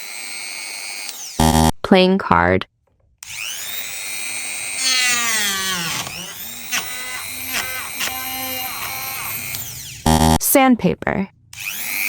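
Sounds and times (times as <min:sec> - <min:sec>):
electric grinder whine: 0:00.0 - 0:01.7, 0:03.2 - 0:10.4, 0:11.4 - 0:12.0.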